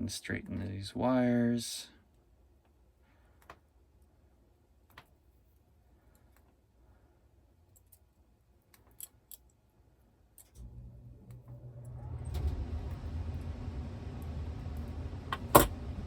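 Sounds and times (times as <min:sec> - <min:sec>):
low rumble: 0:10.6 - 0:16.0.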